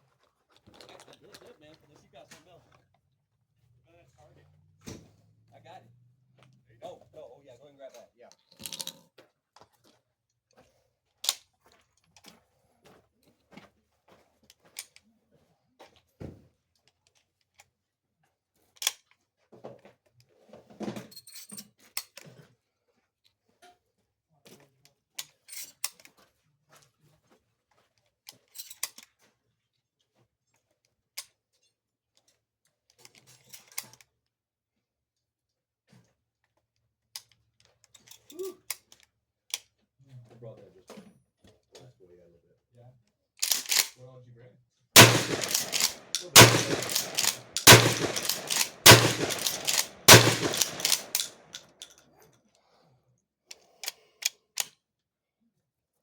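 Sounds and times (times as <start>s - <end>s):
objects clicking and rattling: 43.4s - 43.9s, 45.0s - 51.4s.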